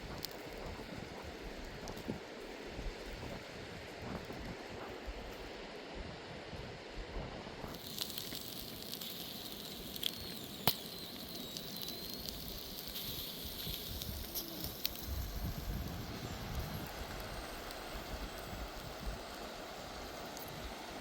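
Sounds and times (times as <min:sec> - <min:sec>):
wood fire crackling and popping: 0:00.0 - 0:05.5, 0:07.6 - 0:21.0
thin wavering high whistle: 0:09.3 - 0:19.7.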